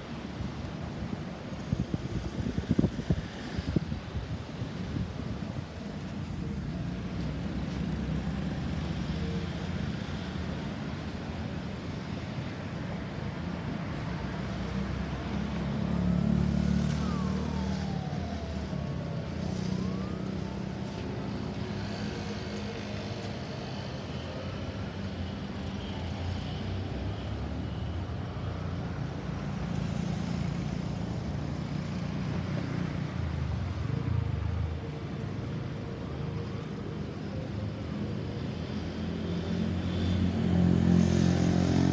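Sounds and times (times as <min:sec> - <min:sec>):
road traffic: 0:00.0 - 0:41.9
emergency vehicle siren wailing: 0:13.7 - 0:28.7, 0:29.4 - 0:41.9.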